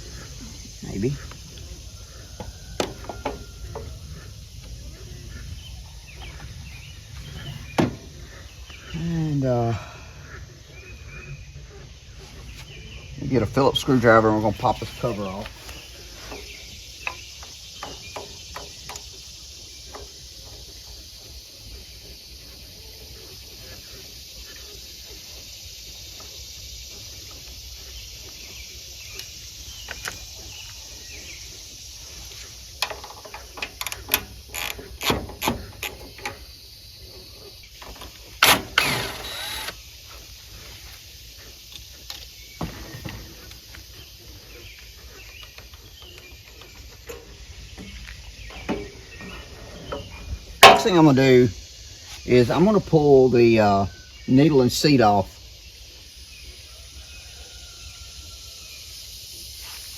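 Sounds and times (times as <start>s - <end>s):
low outdoor hum: 0.0s - 59.9s
tools clicking and knocking: 50.6s - 51.1s.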